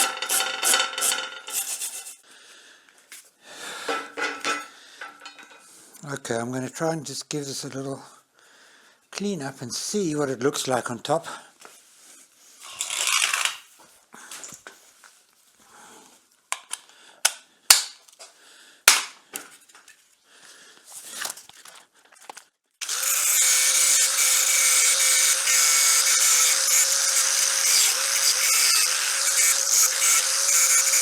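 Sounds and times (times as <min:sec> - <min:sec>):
handheld grinder whining: 0:00.0 - 0:02.0, 0:12.6 - 0:13.6, 0:22.8 - 0:31.0
metal knocks and clicks: 0:03.9 - 0:05.6.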